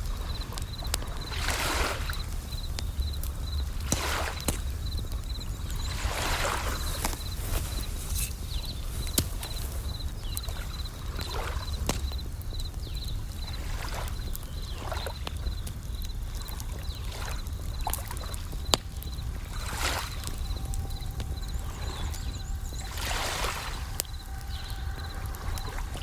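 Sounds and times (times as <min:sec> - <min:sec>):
ocean waves: 0:00.0 - 0:11.9, 0:19.2 - 0:26.0
campfire crackling with pops: 0:00.0 - 0:26.0
crickets chirping: 0:00.0 - 0:26.0.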